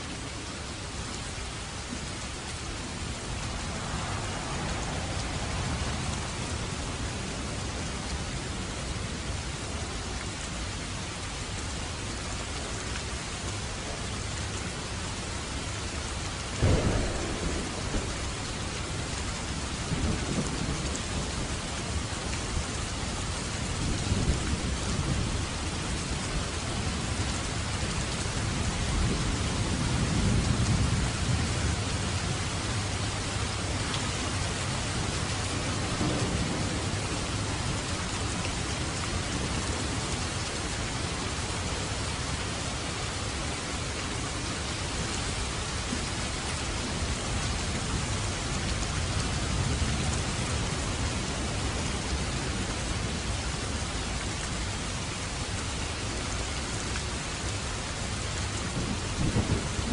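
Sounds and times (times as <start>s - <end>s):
steady rain falling: 0.0s - 59.9s
low rolling thunder: 3.0s - 8.1s, 16.6s - 27.3s, 27.9s - 40.4s, 58.6s - 59.9s
thunderclap: 16.6s - 18.4s.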